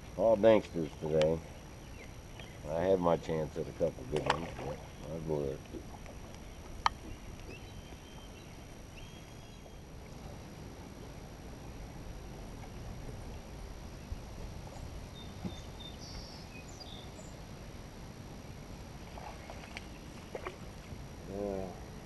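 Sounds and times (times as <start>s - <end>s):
low steady rumble: 0.0s - 22.0s.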